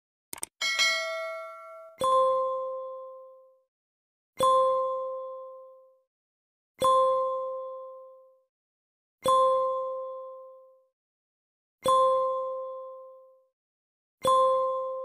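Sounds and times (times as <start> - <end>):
chime ringing: 0.6 - 2.3.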